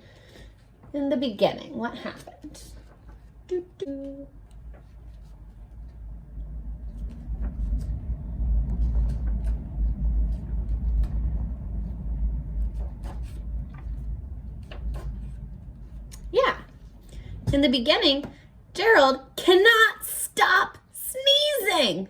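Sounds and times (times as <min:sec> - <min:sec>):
heavy low rumble: 0:01.7 - 0:19.4
book pages flipping: 0:04.4 - 0:06.0, 0:06.9 - 0:11.2, 0:12.6 - 0:16.1.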